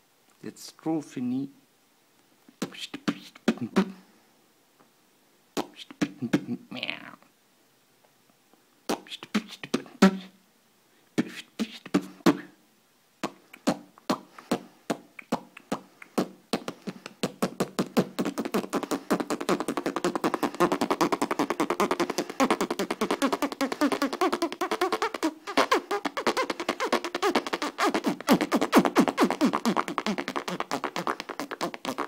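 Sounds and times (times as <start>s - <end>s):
beatboxing: 2.5s - 4.1s, 5.6s - 7.2s, 8.9s - 10.4s, 11.2s - 12.6s, 13.2s - 32.0s.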